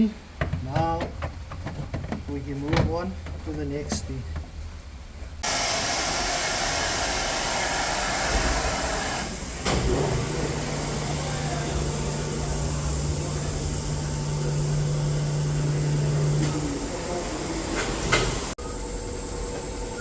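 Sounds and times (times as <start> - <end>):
electric blower motor rushing air: 5.4 - 18.6.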